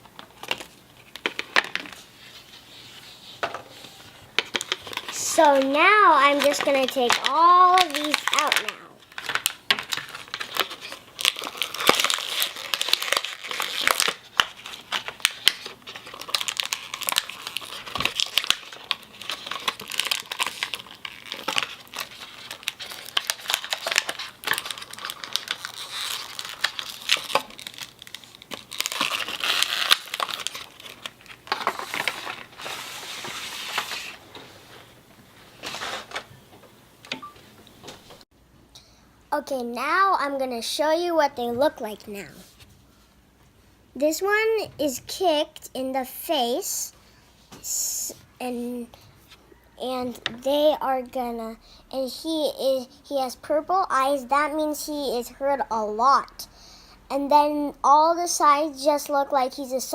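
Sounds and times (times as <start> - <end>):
plastic packaging crinkling: 3.8 - 36.4.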